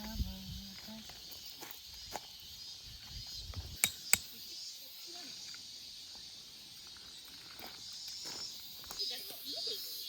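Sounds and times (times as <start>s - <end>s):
steady high-pitched hiss: 0.0s - 10.0s
sharp clicks: 3.8s - 4.3s.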